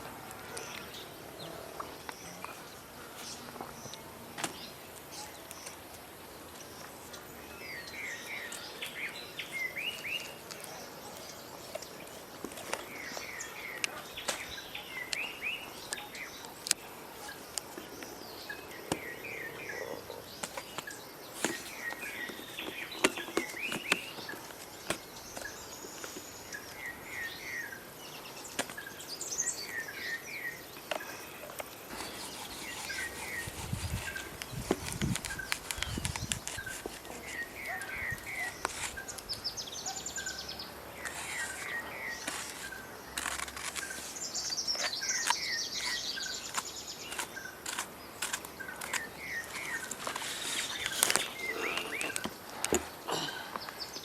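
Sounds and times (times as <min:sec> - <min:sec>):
birds warbling: 0:29.4 - 0:54.0.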